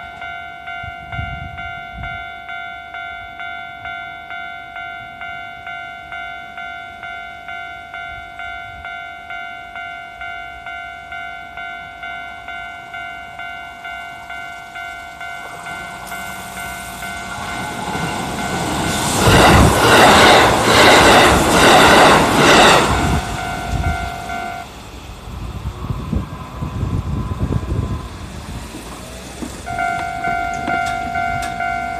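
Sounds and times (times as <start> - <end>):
level-crossing bell dinging: 0.0 - 24.7, 29.7 - 31.9
train wheels clattering over joints: 28.6 - 31.9.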